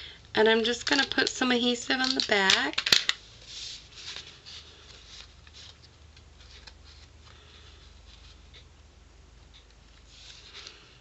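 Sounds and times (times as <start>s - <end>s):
paper rustling: 2.0s - 8.6s, 10.0s - 11.0s.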